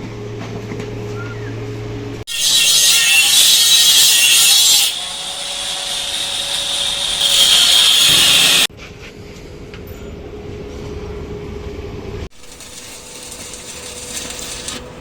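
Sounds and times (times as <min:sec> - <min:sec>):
power tool hissing cut: 0:02.3 - 0:08.7, 0:12.4 - 0:15.0.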